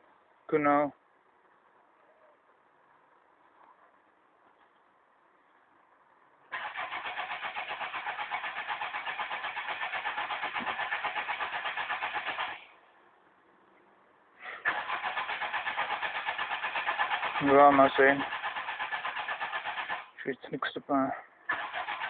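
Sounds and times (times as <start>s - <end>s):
starter motor cranking engine: 6.5s - 12.7s, 14.6s - 20.2s, 21.5s - 22.0s.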